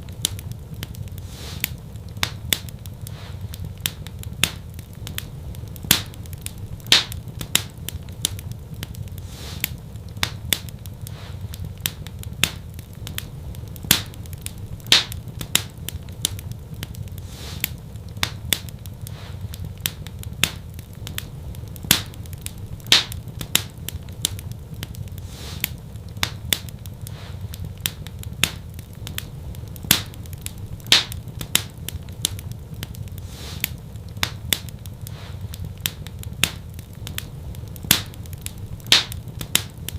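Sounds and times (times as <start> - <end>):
wood fire crackling: 0.0 - 39.9.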